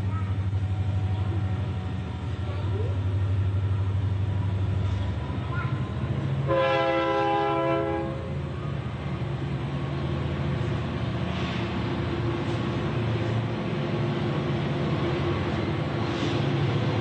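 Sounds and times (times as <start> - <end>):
loud horn: 6.5 - 8.3.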